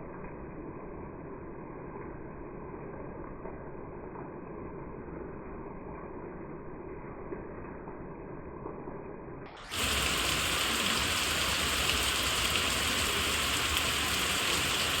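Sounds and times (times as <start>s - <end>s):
heavy rain pouring: 9.6s - 15.0s.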